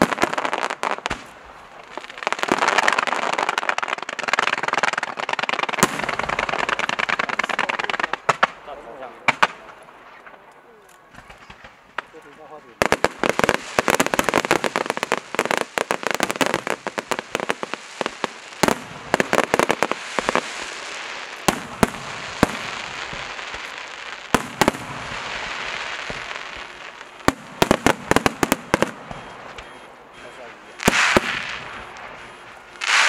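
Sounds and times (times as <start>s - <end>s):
firework bangs: 0.0s - 10.5s, 11.1s - 33.0s
firework cracks: 0.0s - 10.5s, 11.1s - 33.0s
crackling hiss: 0.0s - 33.0s.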